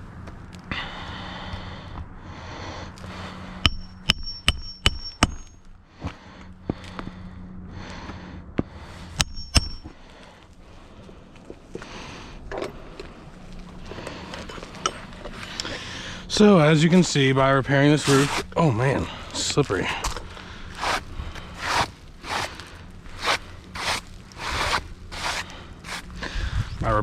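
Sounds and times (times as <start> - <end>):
hammer striking with ring: 3.6 - 5.6, 9.2 - 9.9
shingles scraping and rustling: 16.7 - 26.3.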